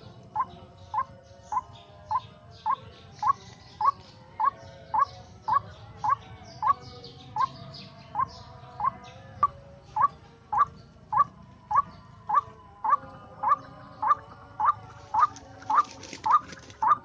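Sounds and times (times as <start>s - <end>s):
waterhen calling: 10.0s - 17.0s.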